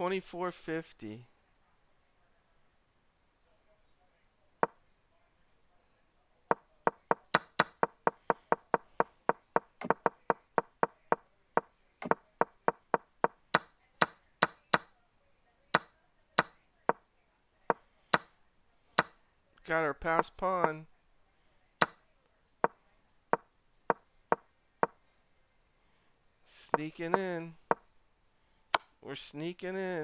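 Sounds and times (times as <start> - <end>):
wooden chess piece clicks: 6.5 - 11.2.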